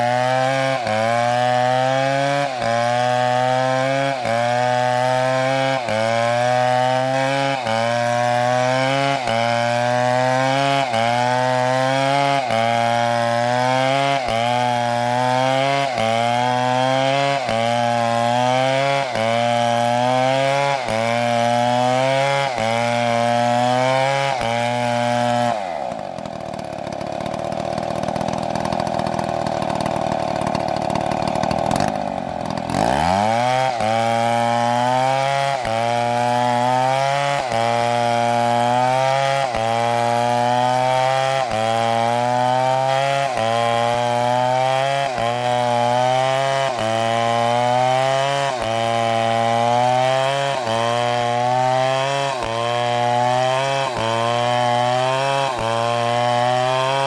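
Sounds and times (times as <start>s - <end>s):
chainsaw cutting wood: 0.0s - 57.0s.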